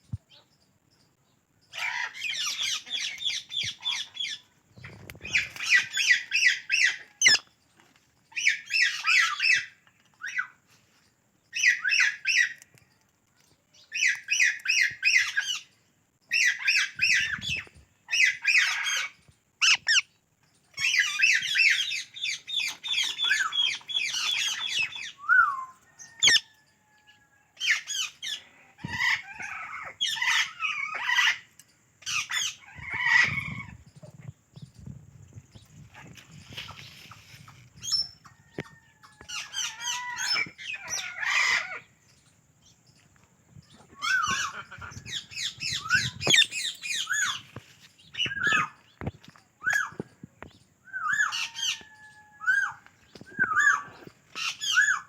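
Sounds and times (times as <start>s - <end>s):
parakeets squawking: 5.4s - 7.4s, 18.2s - 20.0s, 26.2s - 26.4s, 44.0s - 47.4s.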